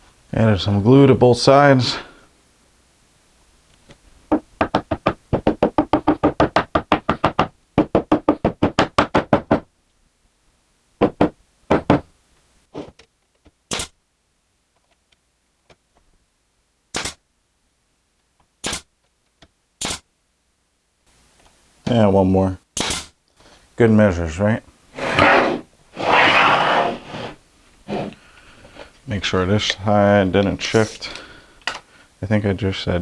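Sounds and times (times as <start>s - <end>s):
hammer knocking wood: 4.3s - 9.7s, 11.0s - 12.1s.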